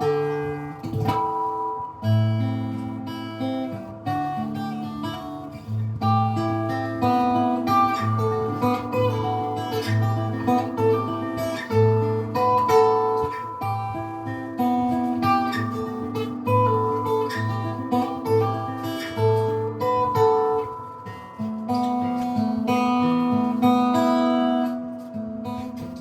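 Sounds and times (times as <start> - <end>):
acoustic guitar playing: 0.0 - 26.0.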